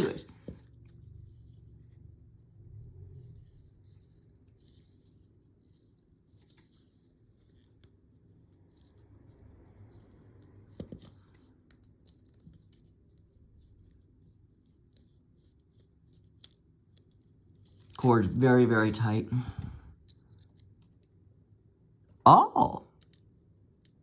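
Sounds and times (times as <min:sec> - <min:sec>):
small metal parts clicking: 0:20.0 - 0:21.1.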